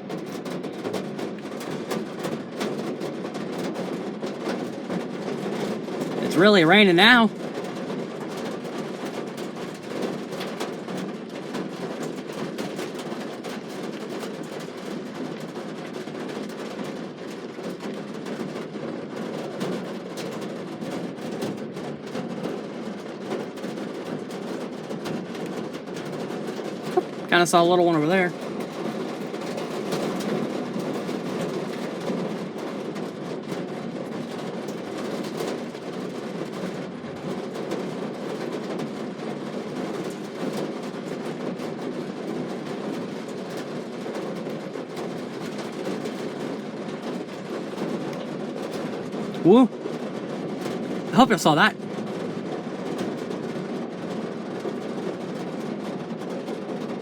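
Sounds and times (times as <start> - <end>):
heavy rain: 4.4 - 8.9, 47.9 - 49.9, 51.1 - 51.8.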